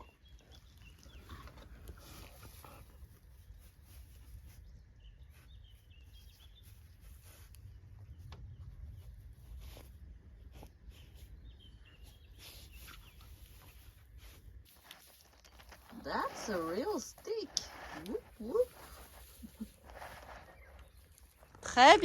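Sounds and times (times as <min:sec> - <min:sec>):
soft clicks and rustles: 0:14.7 - 0:21.8.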